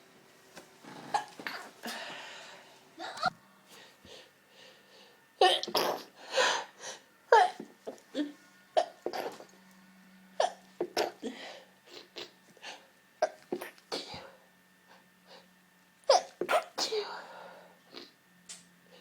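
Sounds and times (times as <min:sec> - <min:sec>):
woman sneezing: 0:16.2 - 0:17.2.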